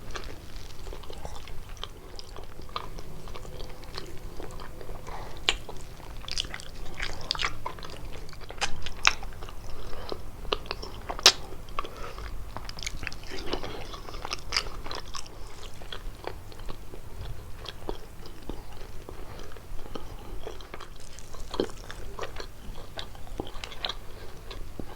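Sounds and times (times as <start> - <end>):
chewing crunchy pastry: 0.0 - 24.9.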